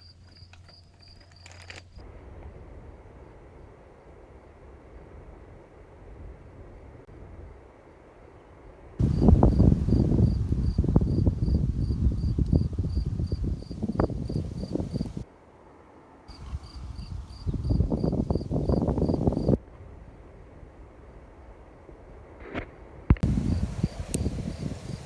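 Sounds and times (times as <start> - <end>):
cricket chirping: 9.0 - 15.2, 16.3 - 19.6, 23.2 - 25.0.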